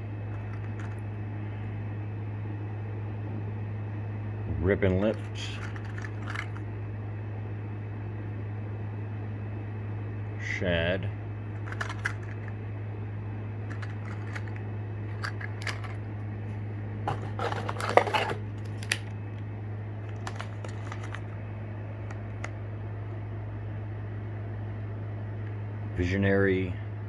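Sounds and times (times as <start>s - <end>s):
steady low hum: 0.0s - 27.0s
plastic packaging crinkling: 0.4s - 1.0s, 5.1s - 6.6s, 11.6s - 12.5s, 13.7s - 16.1s, 17.1s - 19.2s, 20.1s - 21.4s.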